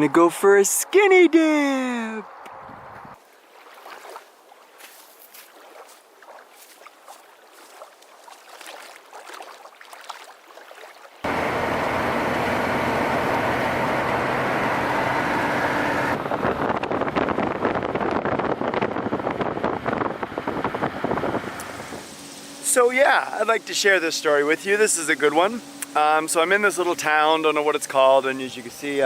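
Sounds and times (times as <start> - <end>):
light wind: 0.0 - 10.6, 11.2 - 27.7
water lapping: 3.2 - 11.3
low hum: 11.3 - 22.6.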